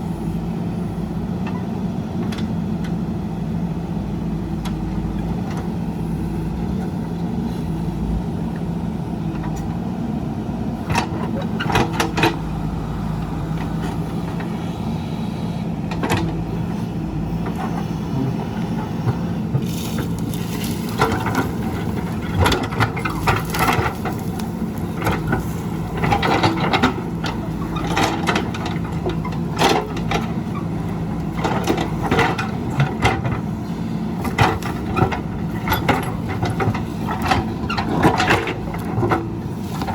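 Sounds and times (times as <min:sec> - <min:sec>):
diesel engine running: 0:00.0 - 0:39.9
digging knocks and clatter: 0:10.8 - 0:14.6, 0:15.8 - 0:39.9.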